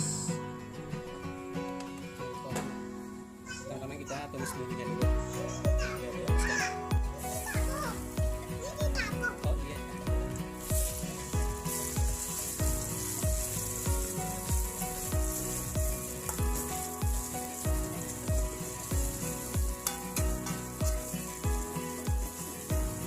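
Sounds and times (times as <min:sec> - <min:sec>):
music with kick-drum beat: 0:05.0 - 0:23.0
oil sizzling in a pan: 0:05.8 - 0:23.0
stirring in a pan: 0:07.2 - 0:08.7, 0:10.3 - 0:23.0.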